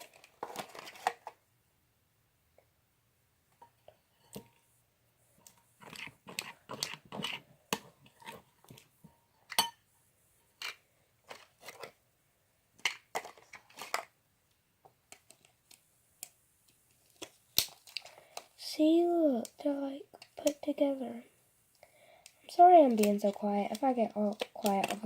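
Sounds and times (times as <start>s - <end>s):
crinkling and crunching handling noises: 0.0s - 1.4s, 5.3s - 9.7s, 10.4s - 12.0s, 12.7s - 14.2s, 14.8s - 21.2s, 22.2s - 25.0s.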